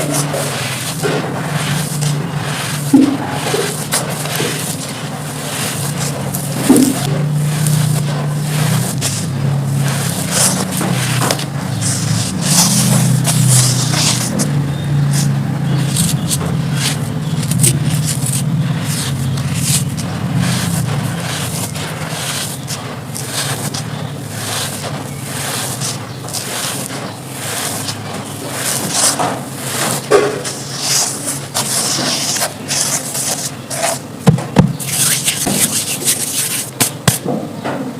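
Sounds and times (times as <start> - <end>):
charcoal crunching and crackling: 0.0 - 37.3
steady low hum: 0.0 - 37.7
sharp knocks: 34.2 - 35.7.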